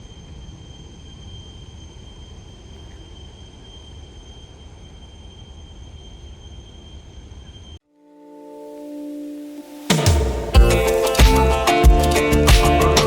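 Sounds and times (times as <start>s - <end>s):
jet airliner rumble and hiss: 0.0s - 7.8s.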